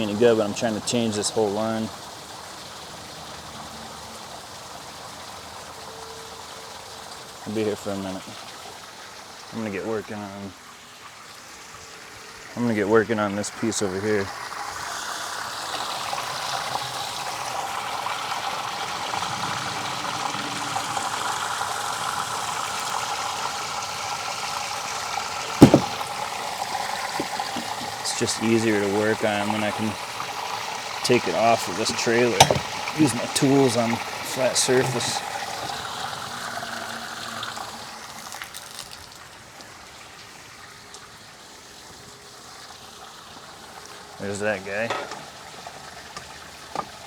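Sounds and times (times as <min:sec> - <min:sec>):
water draining from tank: 0:12.7 - 0:41.2
sharp knock: 0:25.6 - 0:26.0.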